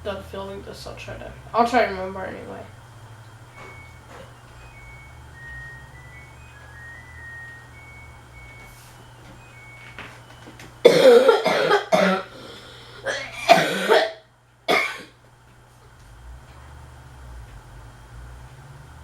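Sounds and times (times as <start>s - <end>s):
ceiling fan humming: 0.0s - 19.0s
person coughing: 10.8s - 15.1s.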